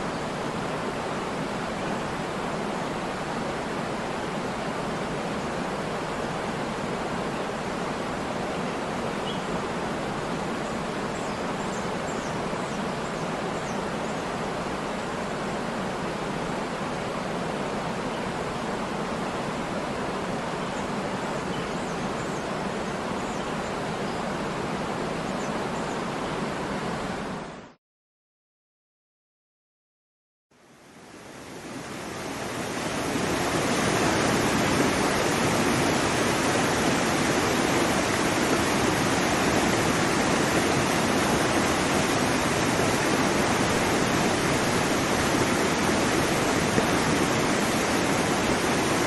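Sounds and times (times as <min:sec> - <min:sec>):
waterfall rushing: 0:31.1 - 0:49.0.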